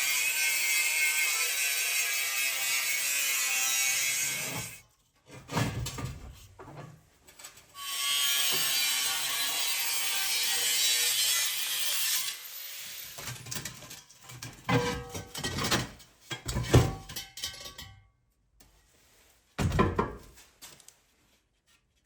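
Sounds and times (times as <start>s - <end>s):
power tool cutting steel: 0.0s - 4.8s, 7.8s - 13.5s
knocks and handling: 18.6s - 22.0s.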